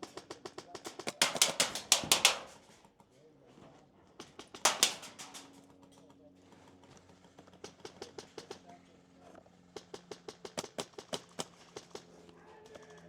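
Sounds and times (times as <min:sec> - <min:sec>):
airsoft gun shots: 0:00.9 - 0:02.6, 0:04.7 - 0:05.6.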